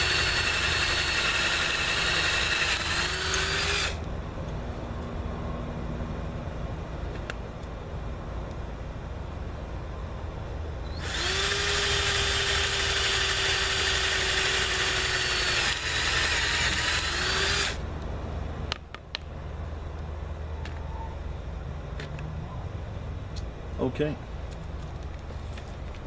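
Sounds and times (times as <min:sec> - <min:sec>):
electric drill running into wood: 0:00.0 - 0:04.0, 0:11.0 - 0:17.8.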